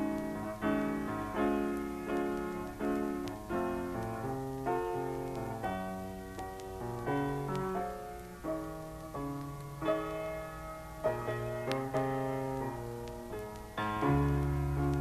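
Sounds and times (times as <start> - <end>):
soft piano chords: 0.0 - 15.0.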